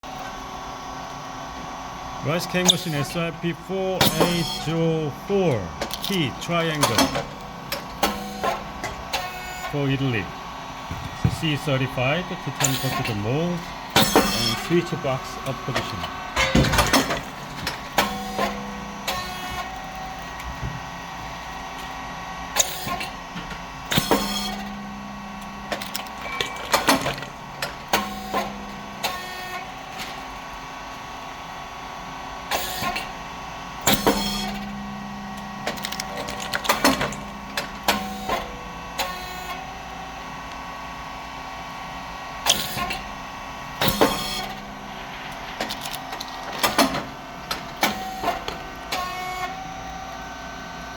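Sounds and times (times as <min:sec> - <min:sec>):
motor hum: 0:00.1 - 0:50.9
machine pops and clacks: 0:04.0 - 0:04.6, 0:05.8 - 0:09.6, 0:13.9 - 0:14.8, 0:15.7 - 0:19.7, 0:25.7 - 0:29.2, 0:35.4 - 0:39.2, 0:43.8 - 0:49.1.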